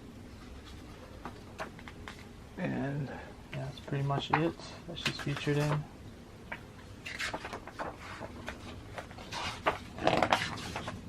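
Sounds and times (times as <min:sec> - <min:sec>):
magazine pages rustling: 0:00.3 - 0:02.4, 0:03.6 - 0:05.9, 0:06.5 - 0:11.0.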